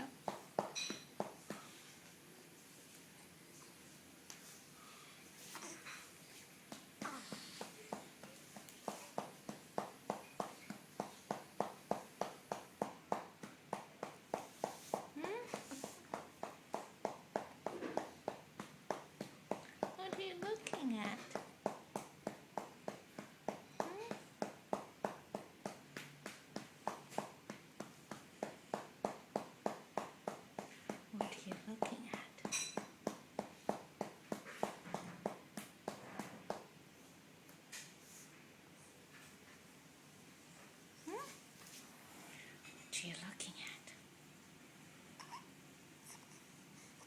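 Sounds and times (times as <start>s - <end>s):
hand patting baby's back: 6.7s - 36.7s.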